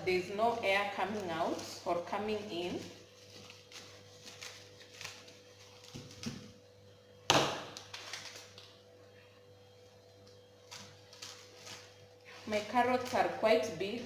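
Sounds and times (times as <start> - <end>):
faint steady hum: 0.0 - 14.0
cling film crinkling: 0.6 - 6.6, 7.7 - 9.0, 10.0 - 13.4.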